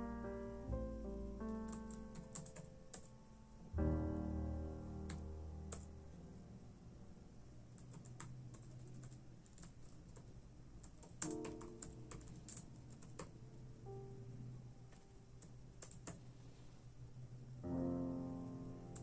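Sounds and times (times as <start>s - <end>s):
soft background music: 0.0s - 7.2s, 11.2s - 16.0s, 17.6s - 19.0s.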